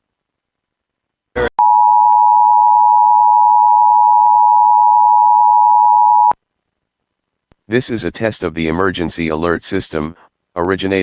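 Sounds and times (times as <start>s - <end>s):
two-tone alarm: 1.6s - 6.3s.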